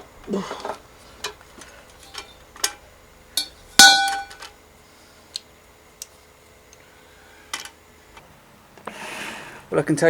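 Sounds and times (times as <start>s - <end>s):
metal tools clinking: 1.2s - 2.8s, 3.4s - 4.5s
loud ringing metal clank: 3.4s - 4.5s.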